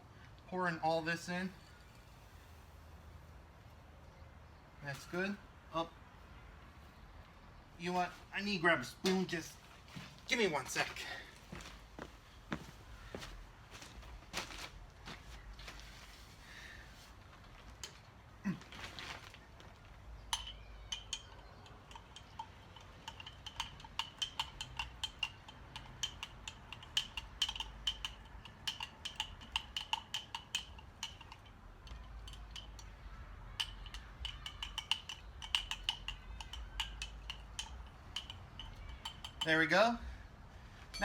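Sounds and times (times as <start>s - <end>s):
spoon clinking against container: 20.2s - 39.5s.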